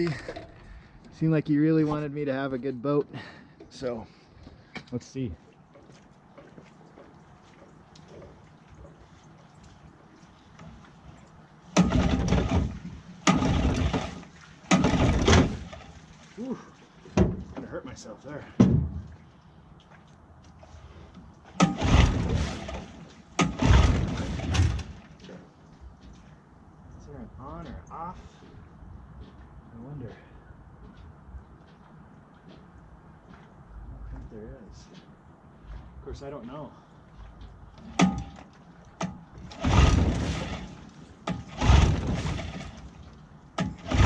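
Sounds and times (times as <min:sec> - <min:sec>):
outboard motor turning over: 0:11.8 - 0:16.0, 0:21.6 - 0:25.0, 0:39.1 - 0:44.0.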